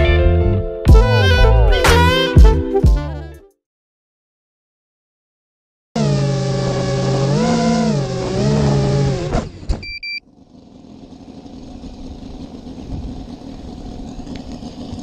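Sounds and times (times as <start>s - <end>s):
electric motors and propellers whining: 6.0s - 15.0s
short electronic beep: 9.8s - 10.2s.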